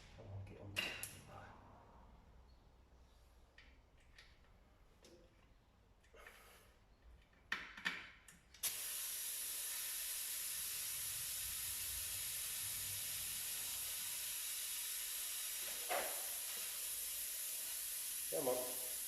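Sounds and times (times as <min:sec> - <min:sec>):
compressed air hissing: 0:08.6 - 0:19.0.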